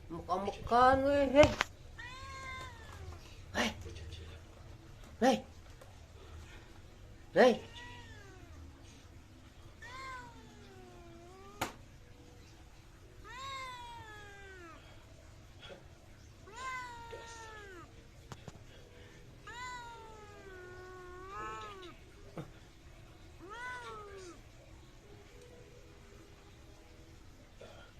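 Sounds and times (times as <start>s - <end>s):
cat meowing: 1.5s - 3.4s, 7.6s - 9.0s, 9.8s - 11.8s, 13.2s - 15.0s, 16.4s - 18.0s, 19.4s - 22.1s, 23.4s - 24.6s.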